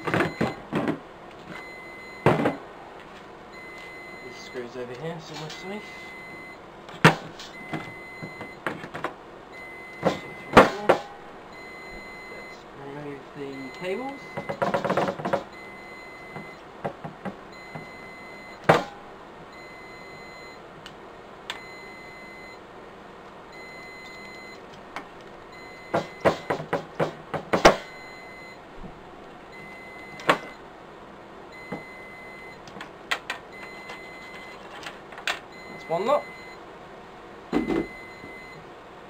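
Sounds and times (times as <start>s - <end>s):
alarm beeping: 0.0s - 0.7s, 1.6s - 2.6s, 3.5s - 6.6s, 7.4s - 8.6s, 9.5s - 12.6s, 13.4s - 14.6s, 15.5s - 16.6s, 17.5s - 20.6s, 21.6s - 22.6s, 23.5s - 24.6s, 25.5s - 26.7s, 27.7s - 28.6s, 29.5s - 30.6s, 31.5s - 32.6s, 33.5s - 34.6s, 35.5s - 36.6s, 37.6s - 38.6s.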